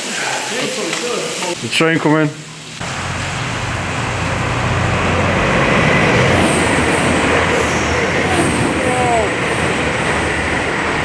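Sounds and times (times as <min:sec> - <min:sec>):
train rushing rumble: 0:02.6 - 0:11.0.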